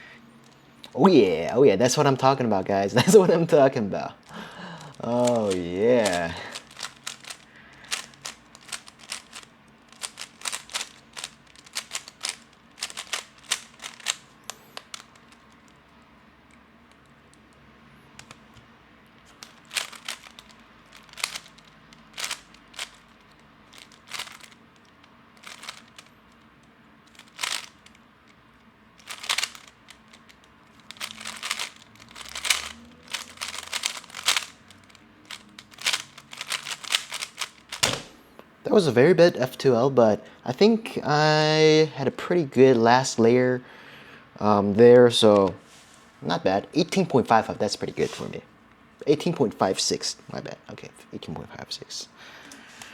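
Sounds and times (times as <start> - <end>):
rapid plastic clicking of puzzle cube: 4.2 - 15.8, 16.5 - 17.6, 18.2 - 38.1.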